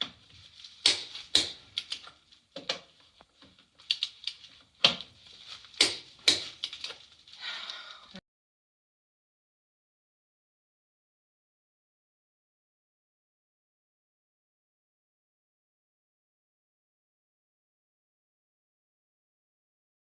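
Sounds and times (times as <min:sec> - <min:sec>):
metallic clicks of hand tools: 0:00.8 - 0:02.8, 0:03.8 - 0:05.0, 0:05.8 - 0:07.0.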